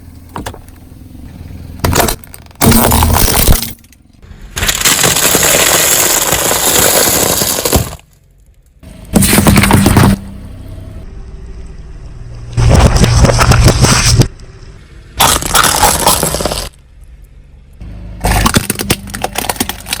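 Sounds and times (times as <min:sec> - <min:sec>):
objects crushed under vehicle: 0:01.8 - 0:08.4, 0:09.1 - 0:10.2, 0:12.6 - 0:14.3, 0:15.2 - 0:16.8, 0:18.2 - 0:20.0
glassy cracking: 0:04.6 - 0:08.2, 0:15.2 - 0:16.8.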